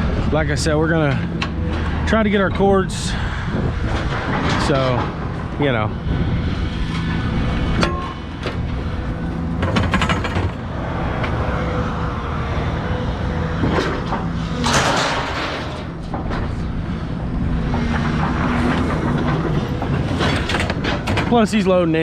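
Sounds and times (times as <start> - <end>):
metal knocks and clattering: 9.4 - 11.3, 13.6 - 16.7, 17.6 - 21.5.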